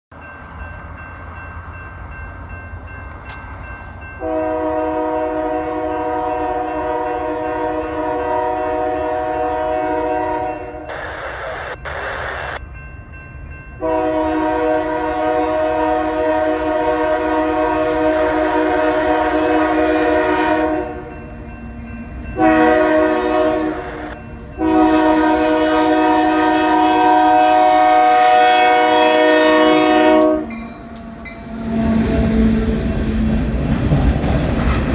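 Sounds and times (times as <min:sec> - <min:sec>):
train rumble: 0:00.1 - 0:34.9
locomotive air horn: 0:04.2 - 0:11.1, 0:13.8 - 0:21.1, 0:22.4 - 0:33.0.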